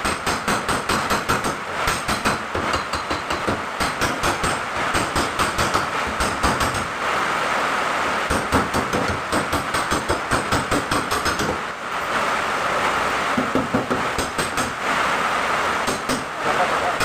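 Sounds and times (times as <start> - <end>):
hammer tapping sheet metal: 0.0 - 6.9, 8.3 - 11.6, 13.4 - 14.8, 15.8 - 16.3
steady hiss: 0.0 - 17.0.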